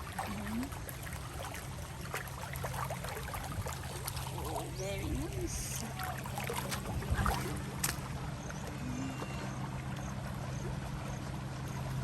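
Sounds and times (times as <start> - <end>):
water splashing in pool: 0.0 - 10.0
low helicopter drone: 4.6 - 12.0.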